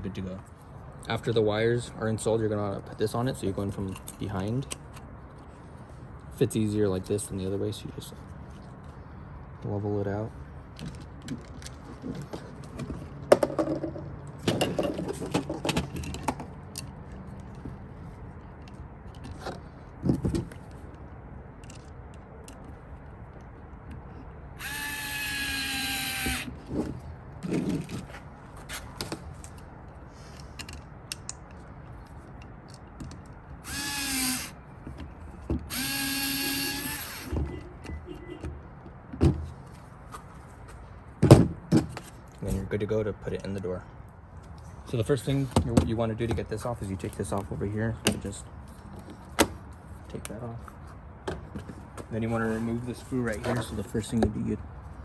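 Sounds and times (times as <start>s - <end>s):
power drill driving screws: 24.6s - 26.5s, 33.6s - 34.6s, 35.7s - 37.4s.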